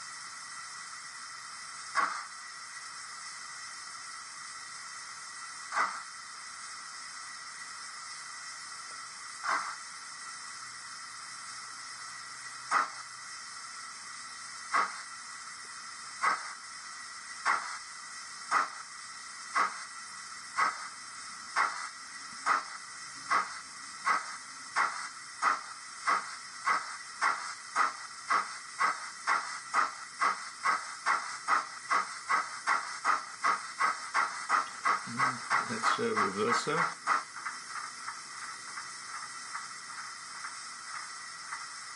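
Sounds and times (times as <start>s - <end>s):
model steam locomotive chuffing: 0.0s - 41.9s
steady steam hiss: 0.0s - 41.9s.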